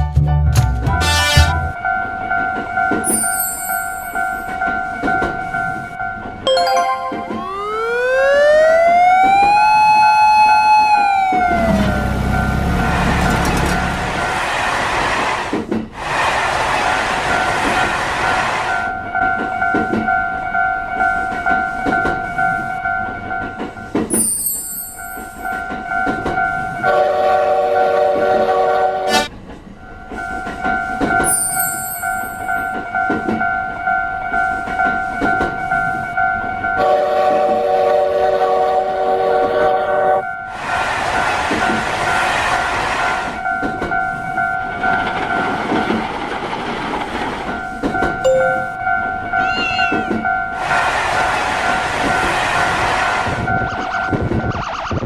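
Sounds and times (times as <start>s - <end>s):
multi-tone train horn: 1.0s - 1.8s, 26.9s - 29.3s, 36.8s - 40.3s
level crossing warning bell: 1.8s - 9.3s, 18.9s - 27.1s, 29.8s - 37.2s, 43.4s - 45.7s, 47.5s - 50.6s
train rushing past: 6.5s - 20.1s, 44.8s - 54.4s.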